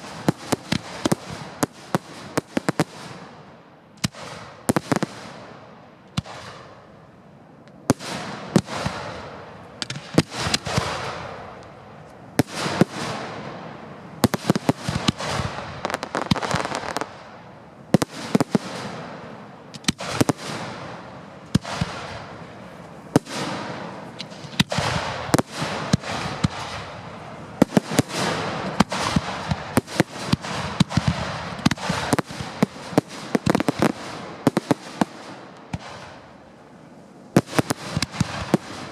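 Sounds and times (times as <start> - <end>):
fireworks bangs: 0.0 - 6.8, 7.8 - 38.9
fireworks crackling: 0.0 - 6.8, 7.7 - 38.9.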